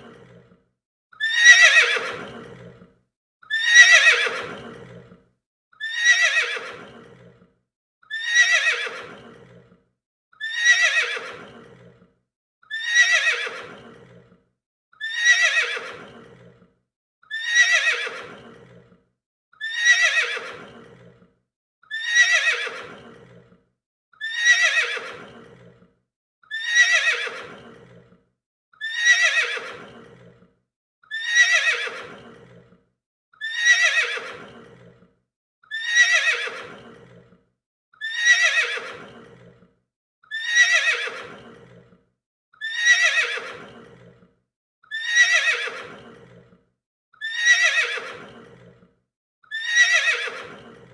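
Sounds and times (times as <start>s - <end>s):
horse neighing: 1.2s - 2.8s, 3.5s - 5.1s, 5.8s - 7.4s, 8.2s - 9.7s, 10.4s - 12.0s, 15.1s - 16.5s, 17.4s - 18.8s, 33.5s - 34.9s, 40.4s - 41.8s, 42.7s - 44.1s, 49.6s - 50.9s.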